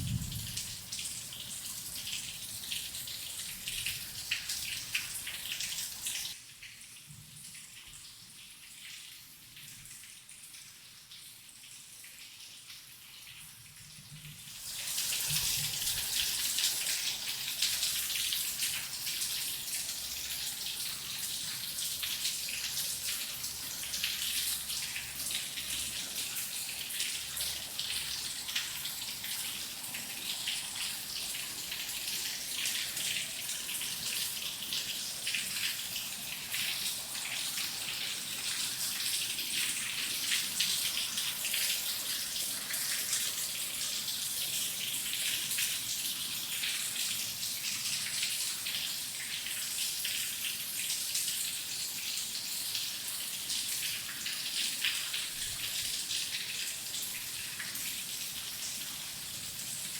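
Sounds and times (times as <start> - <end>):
heavy rain falling: 0.0 - 1.0.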